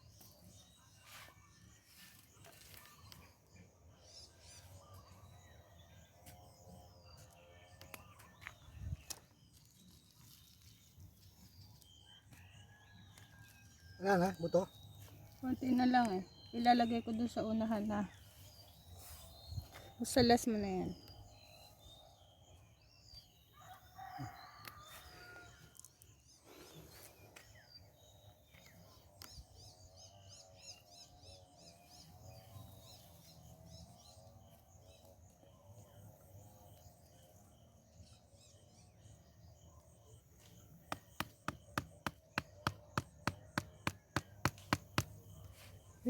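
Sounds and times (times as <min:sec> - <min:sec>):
faint birds chirping: 0:00.0 - 0:46.0
rooster crowing: 0:23.6 - 0:25.6
sharp evenly spaced knocks: 0:40.9 - 0:45.2.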